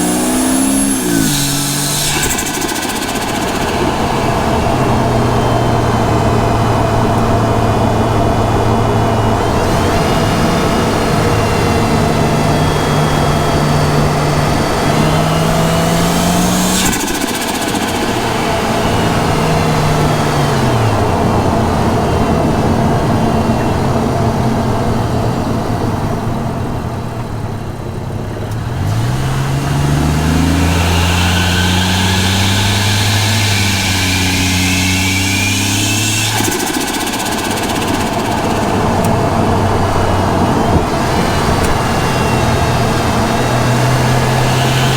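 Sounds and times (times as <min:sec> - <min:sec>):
turbo flutter: 0:00.0 - 0:05.7, 0:16.0 - 0:19.5, 0:30.3 - 0:40.9
turbo spool whistle: 0:00.0 - 0:06.3, 0:30.2 - 0:39.1
car engine revving: 0:00.0 - 0:22.4, 0:28.5 - 0:44.9.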